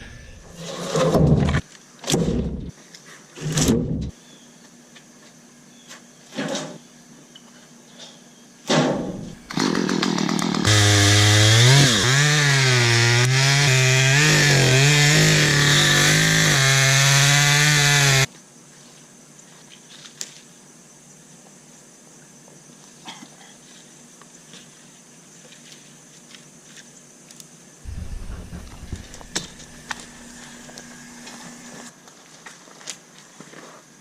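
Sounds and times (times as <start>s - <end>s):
chainsaw running: 9.3s - 18.3s, 27.9s - 31.9s.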